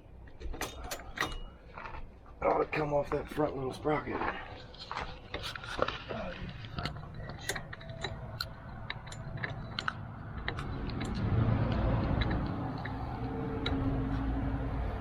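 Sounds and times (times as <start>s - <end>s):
low rumbling noise: 5.6s - 15.0s.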